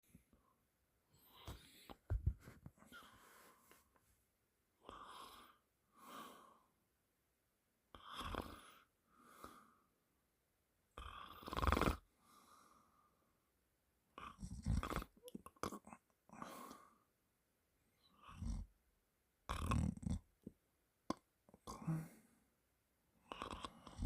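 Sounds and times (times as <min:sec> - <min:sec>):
person snoring: 0:07.9 - 0:09.6, 0:11.0 - 0:12.0, 0:21.6 - 0:22.3.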